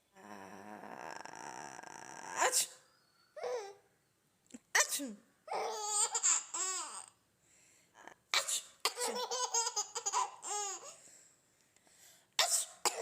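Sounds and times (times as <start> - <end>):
baby giggling: 5.5 - 7.1, 8.9 - 11.0.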